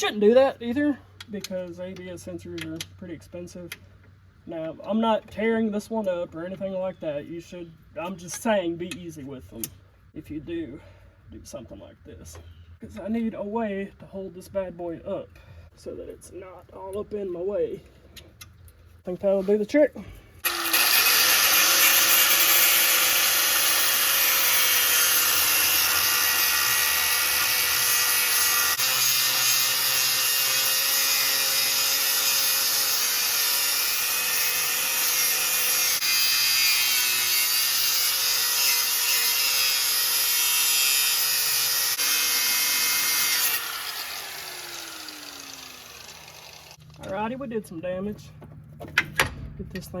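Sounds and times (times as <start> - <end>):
angle grinder cutting metal: 20.4 - 47.0.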